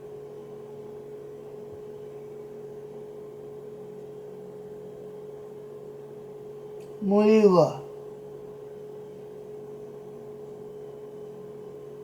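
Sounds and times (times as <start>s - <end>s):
steady hum: 6.8s - 7.9s.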